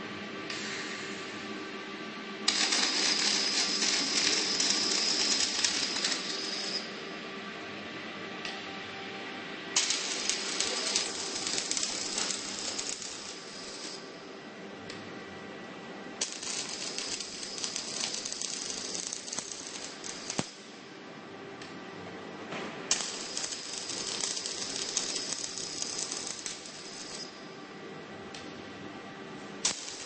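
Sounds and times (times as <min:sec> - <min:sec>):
machine hum: 0:00.0 - 0:30.0
welding arc crackling: 0:02.5 - 0:06.8, 0:09.8 - 0:14.1, 0:16.2 - 0:20.7, 0:22.9 - 0:27.4, 0:29.6 - 0:30.0.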